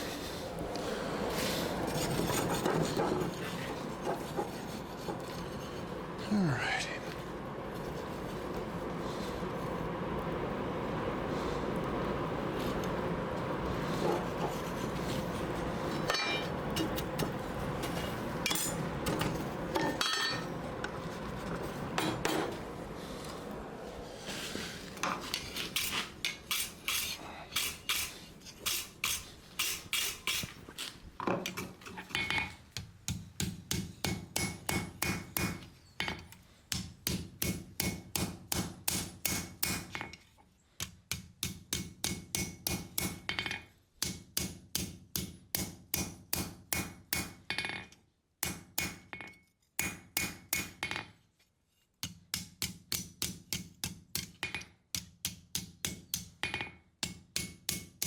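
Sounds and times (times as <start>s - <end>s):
hammer striking steel on anvil: 16.1s - 17.3s, 19.8s - 20.5s, 33.1s - 40.2s, 40.8s - 51.0s, 52.0s - 58.0s.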